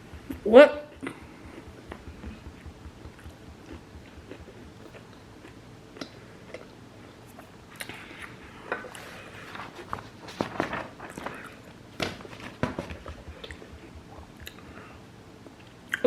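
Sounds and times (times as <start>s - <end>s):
mouth clicks: 0.0s - 6.7s
person chewing: 0.0s - 8.2s.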